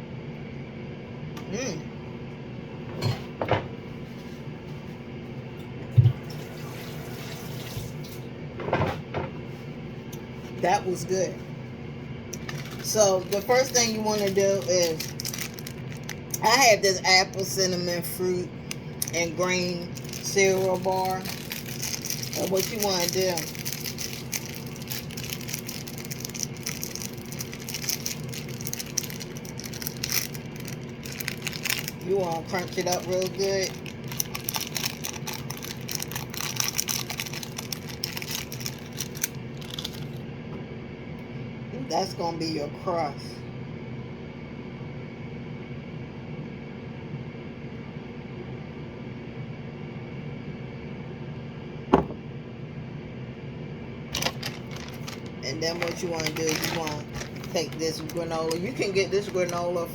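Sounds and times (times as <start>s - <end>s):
steady low hum: 0.0s - 6.4s, 7.7s - 59.9s
cereal bar packet crunching: 12.4s - 16.8s, 18.6s - 40.2s, 54.1s - 59.9s.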